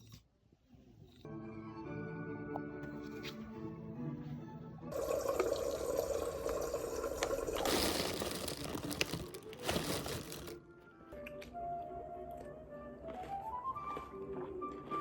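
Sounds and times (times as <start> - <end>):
background music: 1.2 - 15.0
water running: 4.9 - 10.5.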